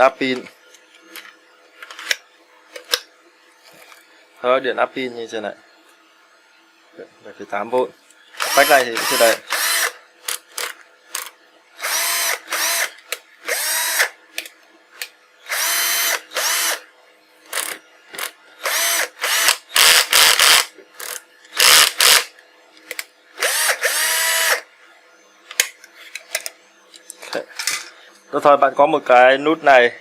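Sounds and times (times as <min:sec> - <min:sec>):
cordless drill motor whining: 0:08.3 - 0:11.2, 0:11.8 - 0:14.2, 0:15.4 - 0:16.9, 0:17.5 - 0:24.7.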